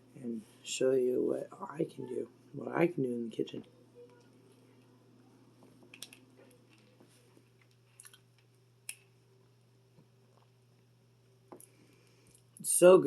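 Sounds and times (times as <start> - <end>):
soft chewing smacks: 5.6 - 9.0.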